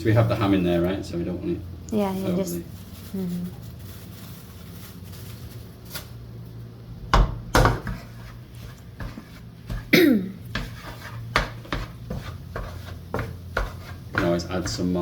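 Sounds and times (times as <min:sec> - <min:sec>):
steady low hum: 0:00.0 - 0:15.0
utensil scraping in frying pan: 0:07.6 - 0:15.0.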